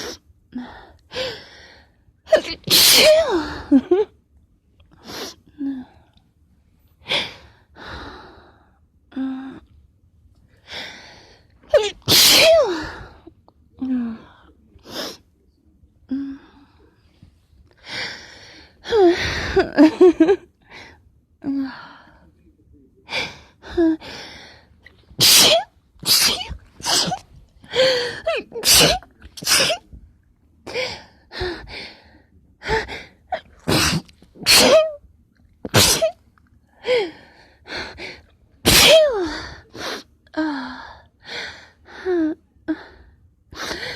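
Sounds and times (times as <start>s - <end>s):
person sneezing: 2.3s - 3.8s, 11.7s - 13.2s, 25.2s - 30.0s, 32.7s - 35.0s, 35.7s - 36.2s, 38.6s - 40.0s.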